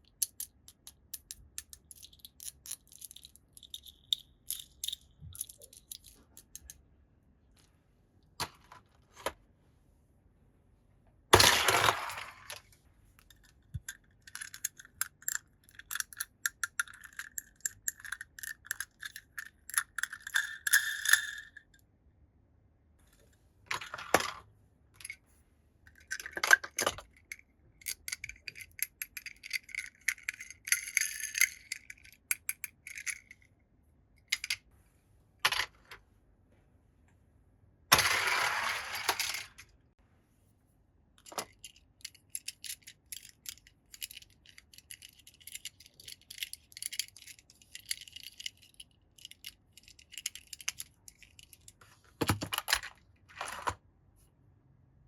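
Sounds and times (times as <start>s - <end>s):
toy cars clicking and rattling: 0.0s - 6.8s, 13.3s - 21.6s, 25.9s - 33.4s, 37.9s - 39.7s, 41.2s - 53.8s.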